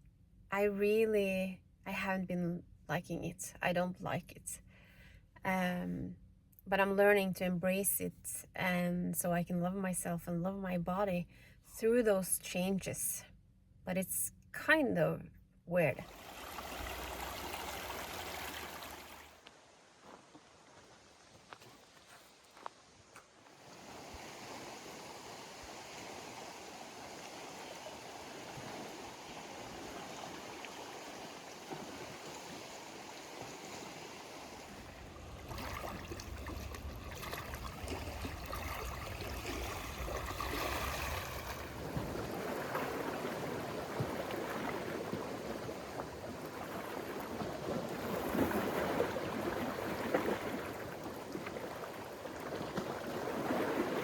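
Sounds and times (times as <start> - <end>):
running water: 16.0 - 46.4.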